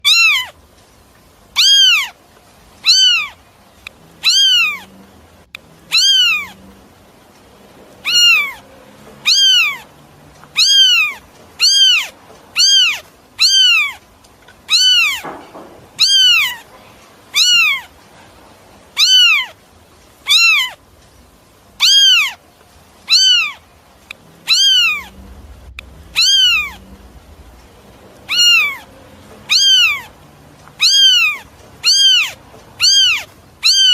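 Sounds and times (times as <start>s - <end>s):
high-pitched animal calls: 0.0s - 0.6s, 1.5s - 2.2s, 2.8s - 3.4s, 4.2s - 5.0s, 5.8s - 6.7s, 8.0s - 14.0s, 14.7s - 18.0s, 18.9s - 19.6s, 20.2s - 20.8s, 21.8s - 22.4s, 23.0s - 23.7s, 24.4s - 27.2s, 28.2s - 33.9s.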